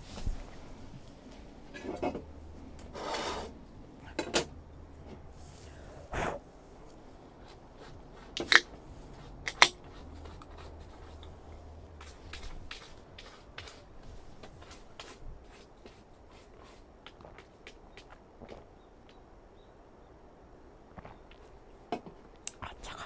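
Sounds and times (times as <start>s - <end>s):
brief scrape: 2.9s - 3.6s.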